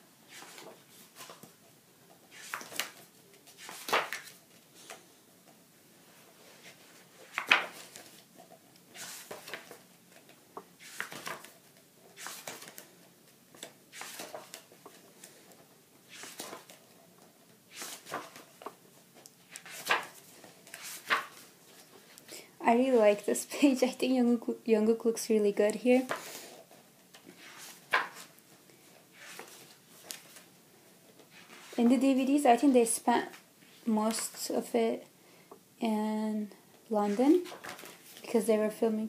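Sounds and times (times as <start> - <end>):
book pages turning: 0.3 - 1.6, 2.3 - 5.0, 6.6 - 22.3, 27.1 - 30.5, 31.2 - 32.0, 37.1 - 38.3.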